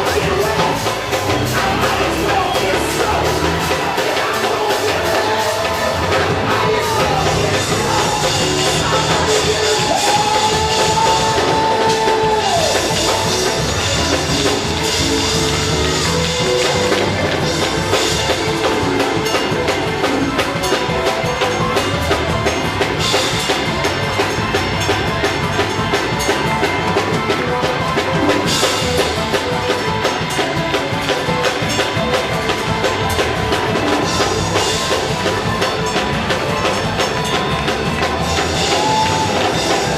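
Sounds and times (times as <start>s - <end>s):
sustained organ-like chords: 0.0s - 11.6s, 12.3s - 39.9s
people singing: 0.0s - 13.6s
drums and fast percussion: 0.0s - 39.9s.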